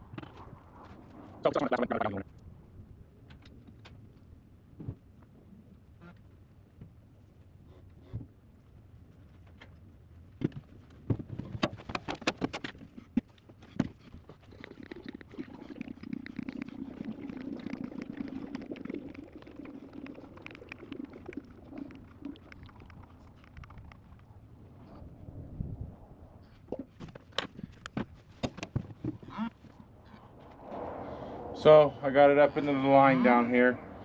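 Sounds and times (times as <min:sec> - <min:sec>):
fluid pouring into tank: 0:14.6 - 0:24.2.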